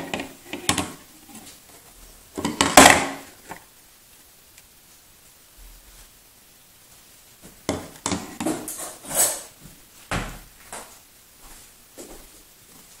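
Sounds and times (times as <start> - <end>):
handling knocks scrapes and rustles: 7.4 - 10.9.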